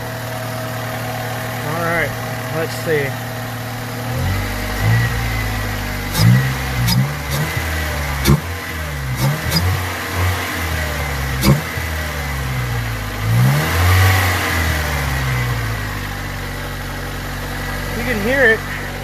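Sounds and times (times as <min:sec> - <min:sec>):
car engine revving: 0:00.0 - 0:19.0.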